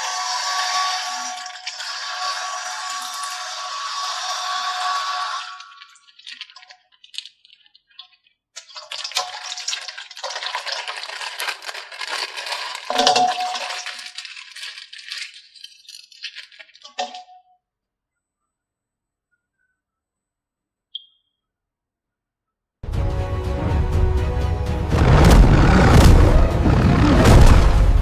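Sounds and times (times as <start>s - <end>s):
plastic toys rattling: 4.3s - 17.3s
plastic packaging crinkling: 5.6s - 17.1s.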